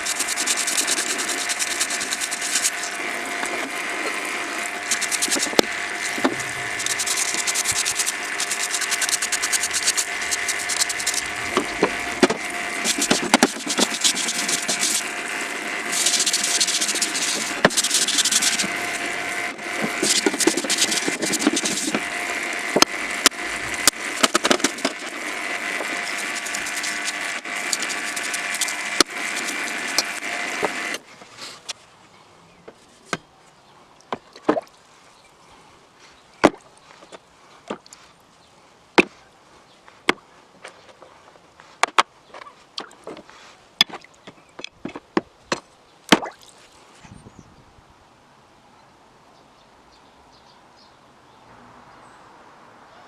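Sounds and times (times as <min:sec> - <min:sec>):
steady hum: 0:00.0 - 0:31.1.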